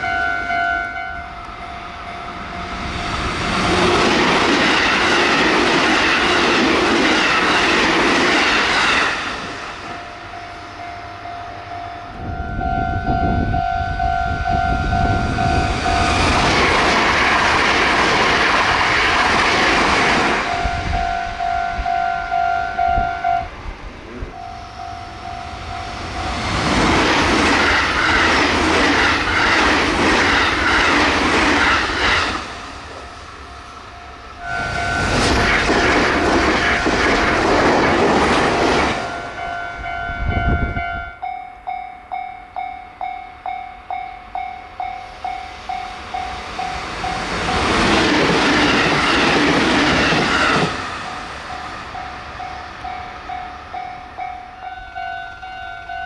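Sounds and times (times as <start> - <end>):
crossing warning bell dinging: 0.0 - 56.0
train wheels rushing and clattering: 1.4 - 10.1, 14.1 - 22.0, 23.0 - 40.8, 44.3 - 54.6.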